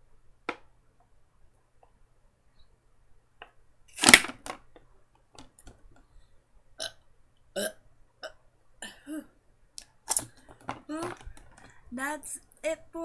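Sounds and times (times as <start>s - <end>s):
person burping loudly: 6.8s - 7.0s, 7.6s - 9.3s.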